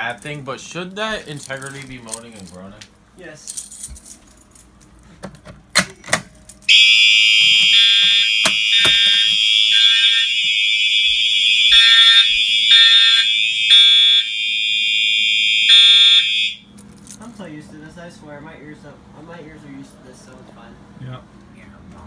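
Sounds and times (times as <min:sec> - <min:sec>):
fire alarm horns: 0:06.7 - 0:16.8.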